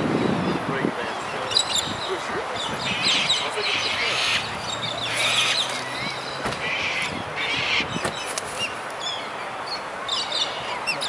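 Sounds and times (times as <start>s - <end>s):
cockatoos screeching: 1.5s - 8.8s.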